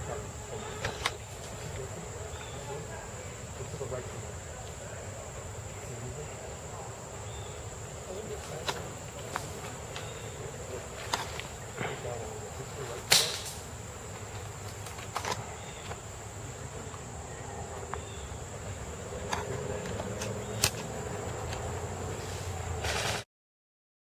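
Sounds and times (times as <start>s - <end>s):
insects droning: 0.0s - 23.2s
sharp snaps: 13.0s - 13.7s, 19.3s - 20.9s.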